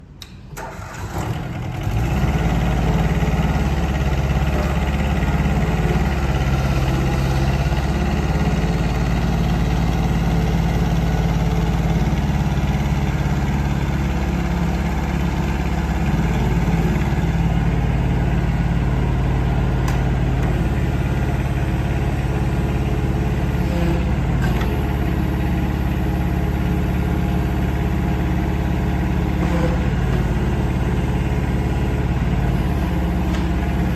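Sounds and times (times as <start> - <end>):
mini excavator engine running: 0.0 - 33.9.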